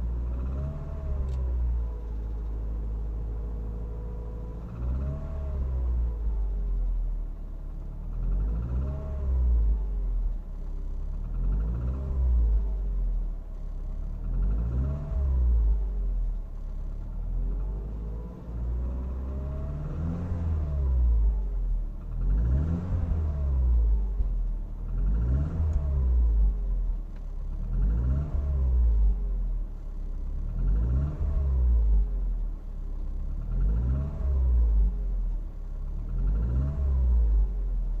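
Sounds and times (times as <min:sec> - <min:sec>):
car engine revving: 0:11.2 - 0:12.9, 0:14.1 - 0:16.1, 0:17.2 - 0:26.9, 0:27.6 - 0:29.5, 0:30.4 - 0:32.2, 0:33.3 - 0:35.3, 0:35.9 - 0:38.0.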